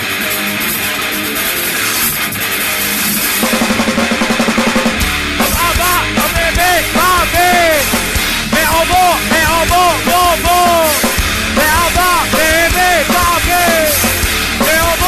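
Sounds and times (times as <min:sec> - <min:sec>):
grindcore band playing: 0:00.0 - 0:15.0
person shouting vocals: 0:05.5 - 0:07.9, 0:08.6 - 0:11.0, 0:11.6 - 0:14.0.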